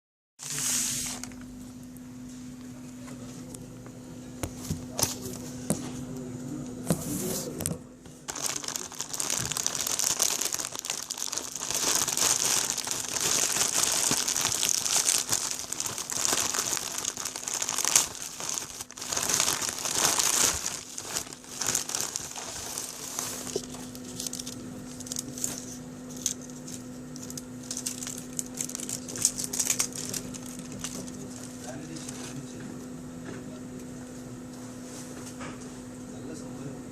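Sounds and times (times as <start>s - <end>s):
plastic wrapping crinkling and tearing: 8.3s - 32.4s.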